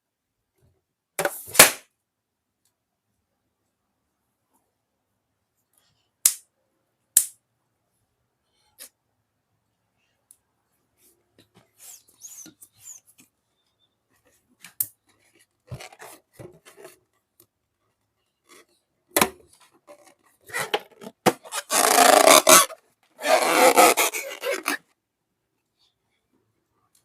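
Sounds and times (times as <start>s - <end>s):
rasping crackling bursts: 21.5s - 24.8s.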